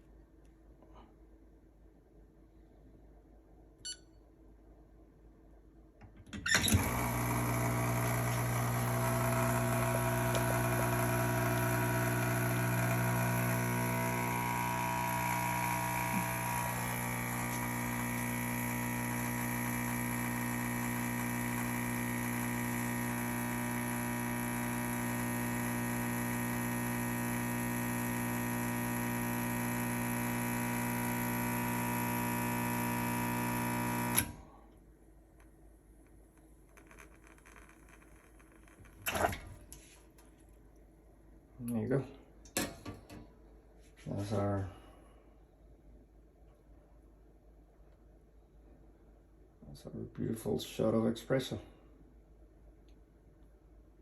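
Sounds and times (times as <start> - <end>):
pump clunk: 6.5 - 17.8, 39.0 - 39.6
espresso pump humming and whining: 6.5 - 34.4.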